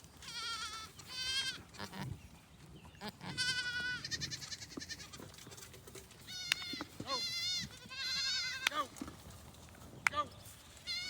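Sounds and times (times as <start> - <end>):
goats bleating: 0.2 - 2.1, 3.0 - 5.3, 6.2 - 8.9.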